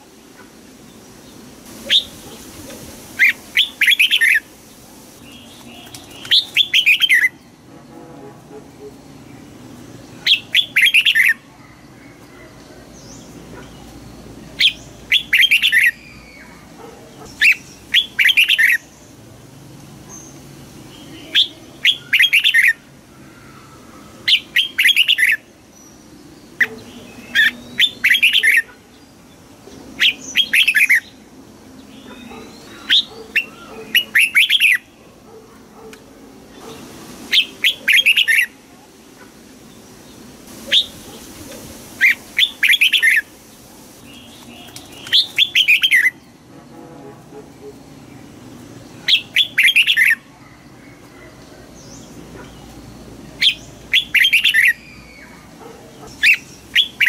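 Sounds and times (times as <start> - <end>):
bird chirping song: 3.2 - 7.6, 8.7 - 19.2, 20.1 - 38.6, 44.0 - 46.5, 47.6 - 57.0.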